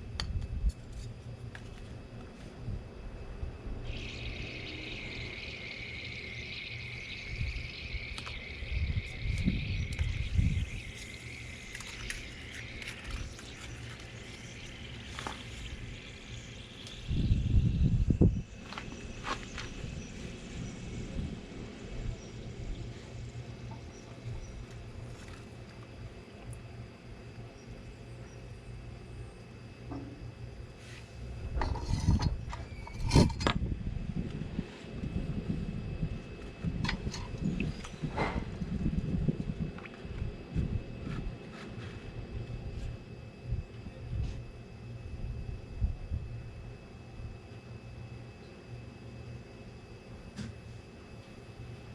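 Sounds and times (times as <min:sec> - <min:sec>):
low steady rumble: 0:00.0 - 0:51.9
insects chirping faintly: 0:00.7 - 0:33.8, 0:35.8 - 0:41.0.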